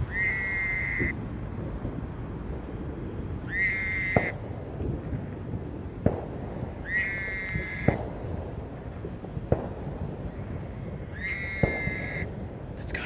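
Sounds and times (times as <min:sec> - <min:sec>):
tree frog trilling: 0:00.0 - 0:01.1, 0:03.4 - 0:04.3, 0:06.8 - 0:08.0, 0:11.1 - 0:12.9
night background: 0:00.0 - 0:13.0.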